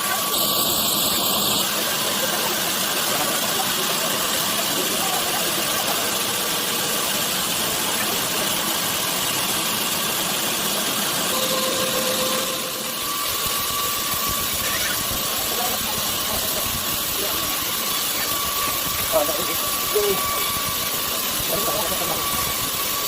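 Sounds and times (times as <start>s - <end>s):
faint steady whine: 0.0s - 23.0s
sawmill machinery running: 0.0s - 23.0s.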